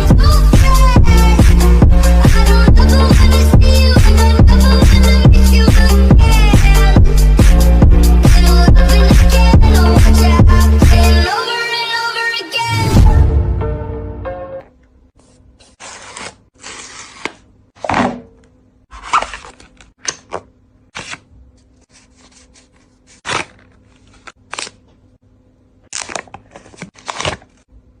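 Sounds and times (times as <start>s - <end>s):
packaging rustling and scraping: 15.2s - 17.9s, 18.9s - 20.4s, 21.0s - 24.9s, 25.9s - 27.7s.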